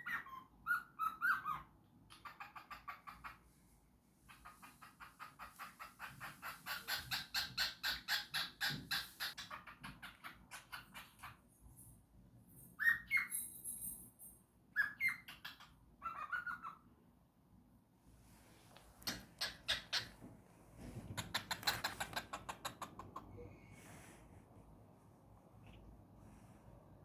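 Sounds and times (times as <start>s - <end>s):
cockatiel whistled calls: 0.0s - 1.7s, 12.8s - 13.4s, 14.8s - 16.8s.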